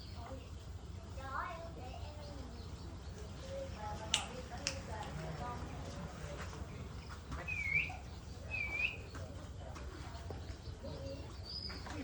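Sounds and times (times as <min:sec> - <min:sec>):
low steady background rumble: 0:00.0 - 0:12.0
bird chirping: 0:01.8 - 0:05.9, 0:06.6 - 0:12.0.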